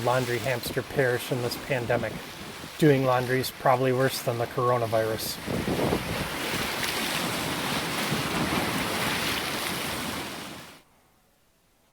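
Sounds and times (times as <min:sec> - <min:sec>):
waves washing on a shore: 0:00.0 - 0:10.9
wind buffeting microphone: 0:05.2 - 0:10.4.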